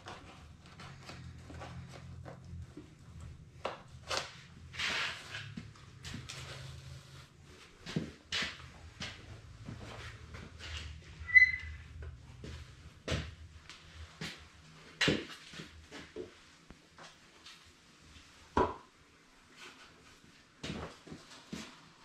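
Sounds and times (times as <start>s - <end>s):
scrapes rustles and knocks of tools: 0.0s - 13.4s
high squeak: 11.2s - 11.8s.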